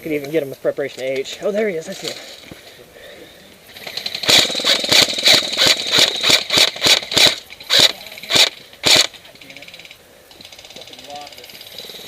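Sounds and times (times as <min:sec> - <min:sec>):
airsoft rifle firing rapidly: 0:04.1 - 0:09.2.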